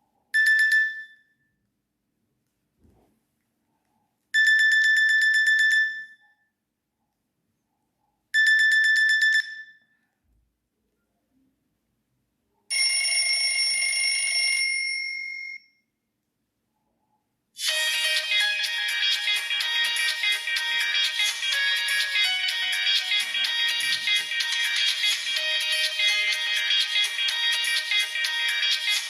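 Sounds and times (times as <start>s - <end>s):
musical ringtone: 17.6s - 29.0s.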